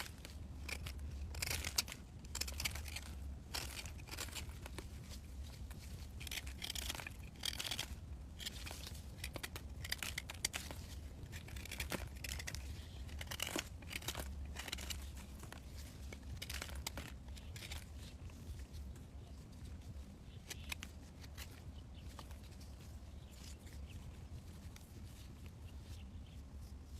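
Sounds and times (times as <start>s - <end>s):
dry material tearing and crinkling: 0.0s - 5.0s, 5.8s - 18.0s.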